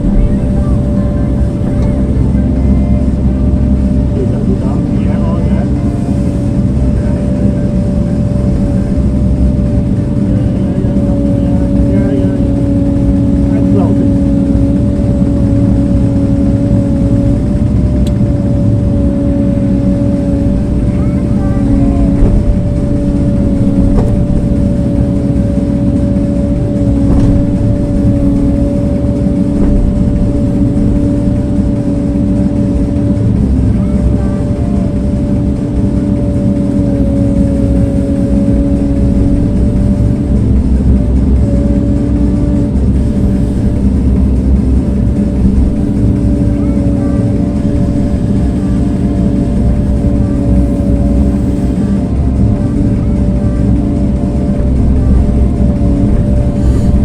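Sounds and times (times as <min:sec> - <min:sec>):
heavy machine engine rumbling: 0:00.0 - 0:57.0
steady hum tone: 0:00.0 - 0:57.0.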